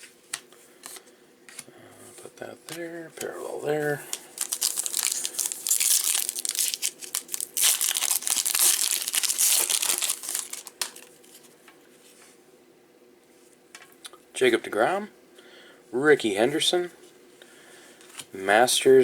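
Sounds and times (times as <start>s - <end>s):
card pack wrapper tearing and crinkling: 4.1s - 11.2s.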